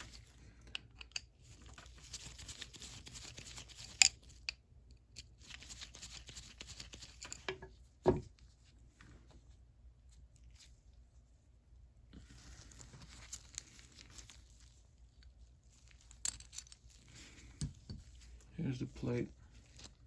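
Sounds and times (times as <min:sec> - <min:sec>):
scraping and rustling: 0:12.1 - 0:20.0.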